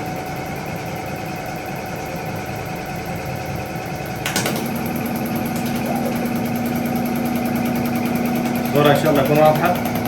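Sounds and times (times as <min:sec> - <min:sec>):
steady hum of injector spray: 0:00.0 - 0:10.0
test bench mechanical buzz: 0:02.5 - 0:10.0.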